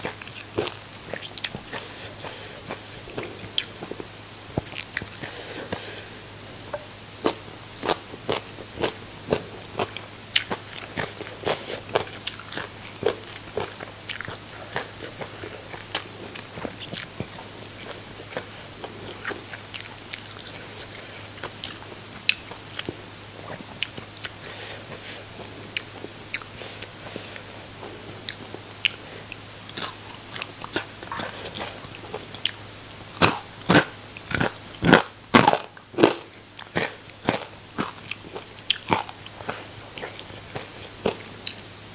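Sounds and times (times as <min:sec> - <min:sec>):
chewing crispy fried fish: 0:00.0 - 0:41.8.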